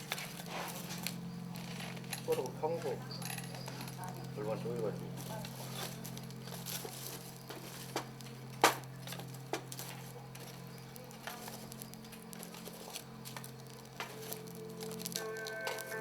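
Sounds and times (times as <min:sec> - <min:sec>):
steady low hum: 0:00.0 - 0:16.0
sharp clicks and light knocks: 0:01.0 - 0:16.0.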